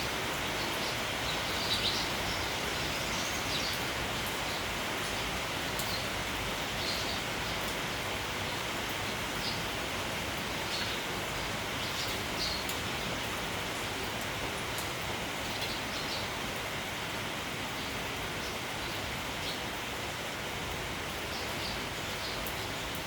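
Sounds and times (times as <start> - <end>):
steady rain falling: 0.0 - 23.0
sparrows chirping: 0.5 - 4.8, 6.8 - 7.7, 10.6 - 12.8.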